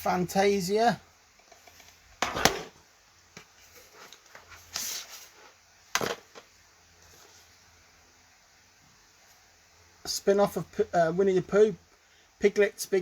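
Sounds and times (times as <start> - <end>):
plastic case sliding: 1.7 - 2.8.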